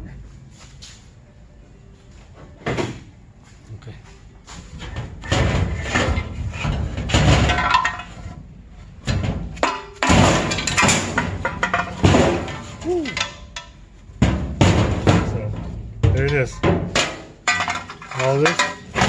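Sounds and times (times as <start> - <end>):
metallic bangs and clanks: 4.8 - 19.0.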